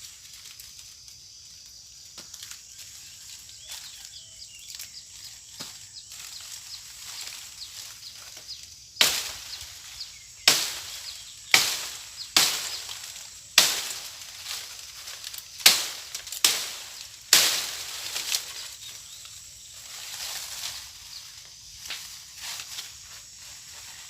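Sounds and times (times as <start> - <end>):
blade chopping a branch: 9.0 - 19.0.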